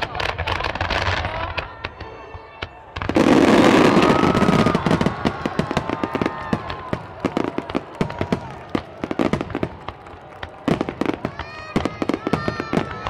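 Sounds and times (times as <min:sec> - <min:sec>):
fireworks crackling: 0:00.0 - 0:13.0
firework burst: 0:02.9 - 0:13.0.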